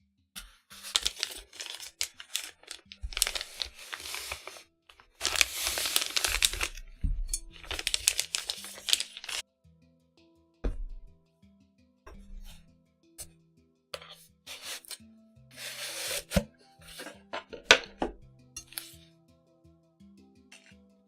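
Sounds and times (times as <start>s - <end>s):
soft background music: 0.4s - 21.0s
plastic packaging crinkling and tearing: 0.7s - 6.8s, 7.5s - 9.4s.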